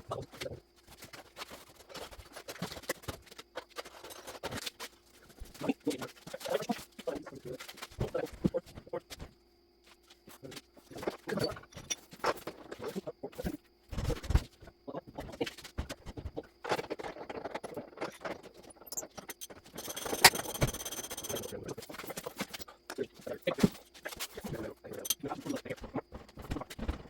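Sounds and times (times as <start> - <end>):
metal parts and tools clanking: 11.0 - 12.8, 16.6 - 22.7, 24.1 - 25.6.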